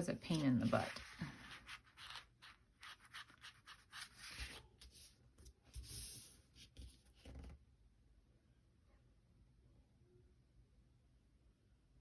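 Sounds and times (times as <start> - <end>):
paper rustling and rubbing: 0.0 - 7.5.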